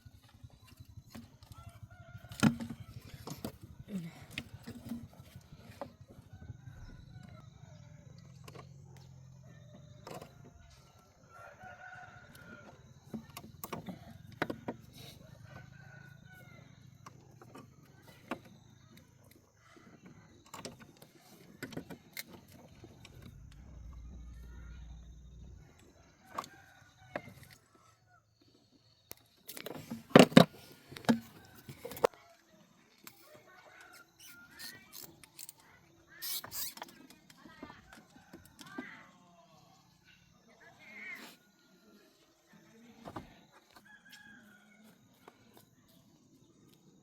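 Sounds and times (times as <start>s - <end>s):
rooster crowing: 1.5s - 3.3s, 11.0s - 13.0s, 23.1s - 27.9s, 43.8s - 45.2s
low steady hum: 23.0s - 25.8s.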